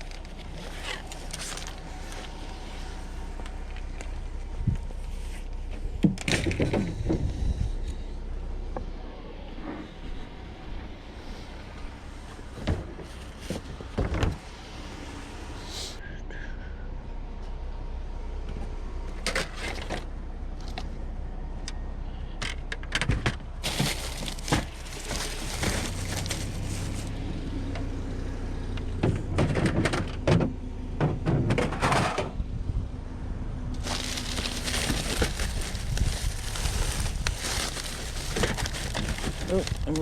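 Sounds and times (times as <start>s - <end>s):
knocks clatter and rustling: 0.0s - 2.3s, 12.5s - 14.4s, 22.4s - 27.1s, 33.8s - 40.0s
vehicle engine idling: 0.0s - 40.0s.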